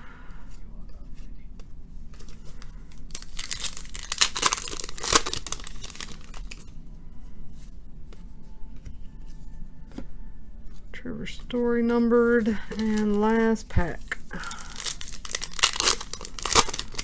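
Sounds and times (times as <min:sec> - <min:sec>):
cards clicking and rustling: 0:02.2 - 0:06.6, 0:12.6 - 0:17.0
card pack wrapper tearing: 0:02.9 - 0:06.6, 0:12.7 - 0:13.4, 0:14.0 - 0:17.0.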